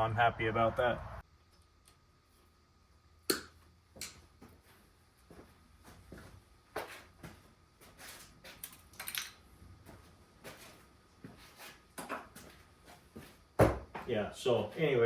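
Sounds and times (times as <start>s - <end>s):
tools and parts being handled: 7.8s - 9.5s.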